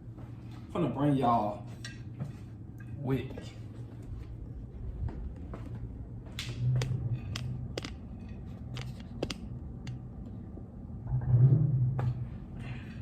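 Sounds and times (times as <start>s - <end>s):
low rumble: 3.6s - 13.0s.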